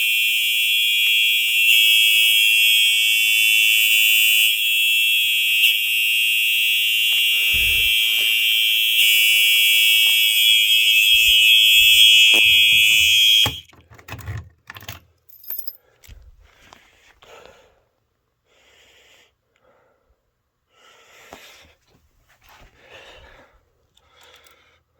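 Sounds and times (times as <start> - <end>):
fire alarm horn tone: 0.0 - 13.7.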